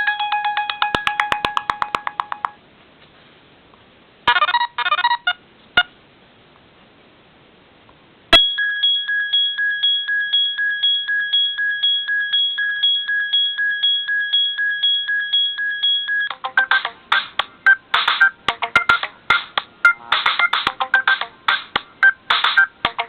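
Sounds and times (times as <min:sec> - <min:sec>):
clicky percussive ringtone: 0:00.0 - 0:02.6, 0:08.4 - 0:23.0
ringtone high beeps: 0:00.0 - 0:02.6, 0:04.3 - 0:05.9, 0:08.4 - 0:21.3, 0:22.0 - 0:23.0.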